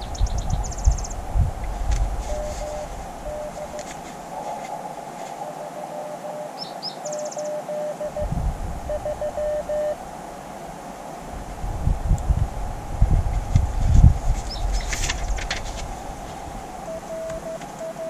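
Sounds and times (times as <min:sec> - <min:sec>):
bird chirping: 0:00.0 - 0:01.2, 0:02.2 - 0:04.4, 0:05.4 - 0:10.0, 0:14.4 - 0:15.4
receiver hiss: 0:00.0 - 0:18.0
morse code beeping: 0:02.3 - 0:03.9, 0:05.4 - 0:10.0, 0:16.8 - 0:18.0.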